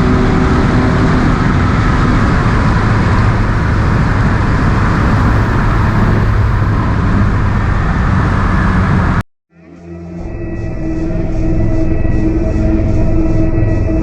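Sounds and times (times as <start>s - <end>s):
road and wind noise: 0.0s - 9.2s
car engine drone: 0.0s - 14.0s.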